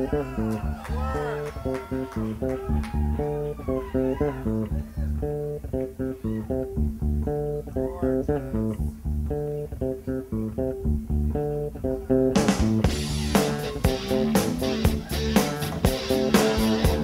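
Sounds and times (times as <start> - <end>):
live band instrumental: 11.4 - 17.0.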